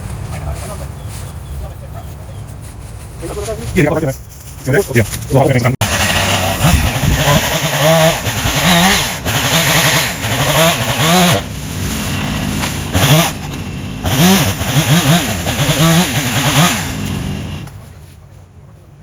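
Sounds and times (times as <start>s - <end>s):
chainsaw engine revving: 5.8s - 17.7s.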